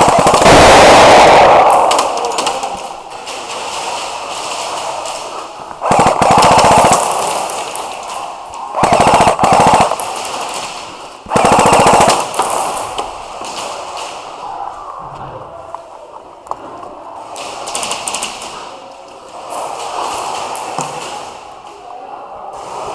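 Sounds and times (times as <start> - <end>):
airsoft rifle full-auto bursts: 0.0 - 2.0, 5.8 - 7.7, 8.8 - 10.3, 11.3 - 12.6.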